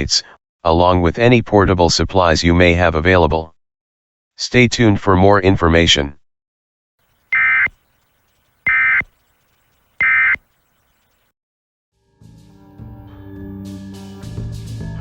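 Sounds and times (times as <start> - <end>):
buzzy two-tone digital bursts: 7.3 - 7.8, 8.6 - 9.1, 10.0 - 10.4.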